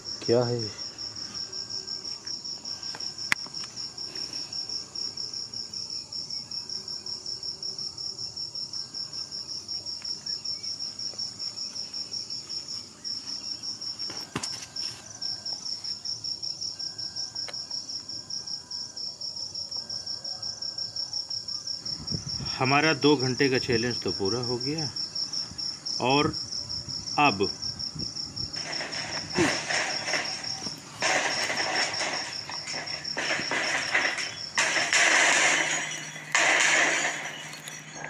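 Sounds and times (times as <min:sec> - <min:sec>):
crickets chirping: 0:00.0 - 0:38.0.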